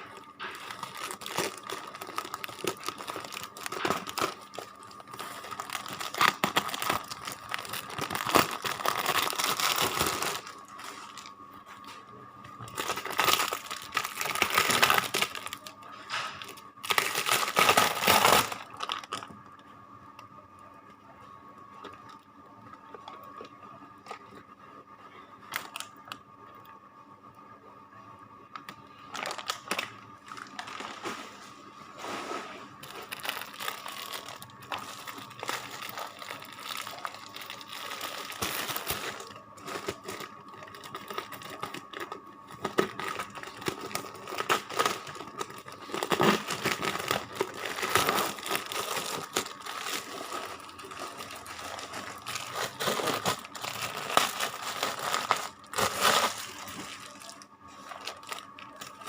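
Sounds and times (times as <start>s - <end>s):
packaging crinkling: 0.0s - 11.9s, 12.5s - 19.5s, 28.6s - 31.3s, 32.8s - 59.0s.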